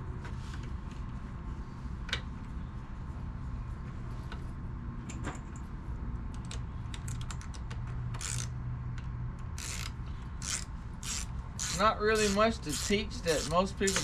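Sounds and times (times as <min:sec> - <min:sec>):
steady low hum: 0:08.1 - 0:14.0.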